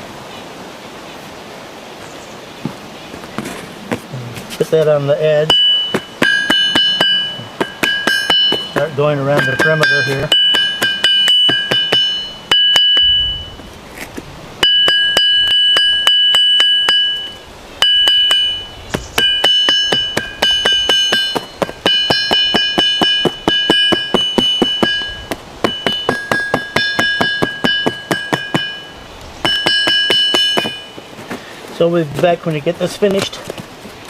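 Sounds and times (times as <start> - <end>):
anvil ringing: 5.4 - 13.6, 14.6 - 31.1.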